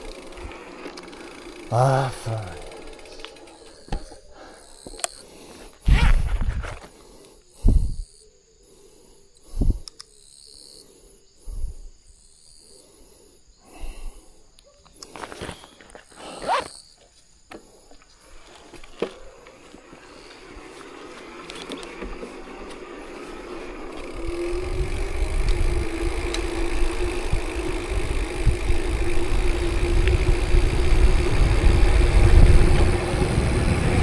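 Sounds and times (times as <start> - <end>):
person breathing heavily: 0.4 - 2.6, 4.0 - 5.8, 6.9 - 8.0, 12.8 - 14.5.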